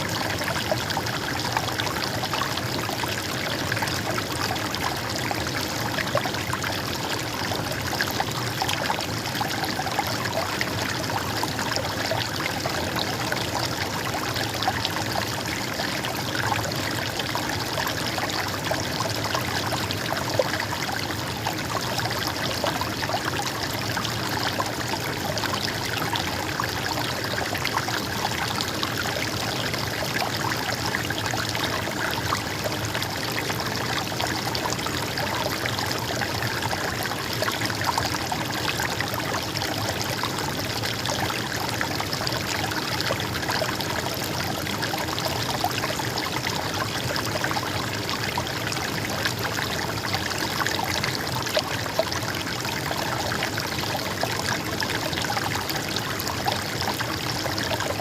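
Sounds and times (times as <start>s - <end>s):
stream babbling and trickling: 0.0s - 58.0s.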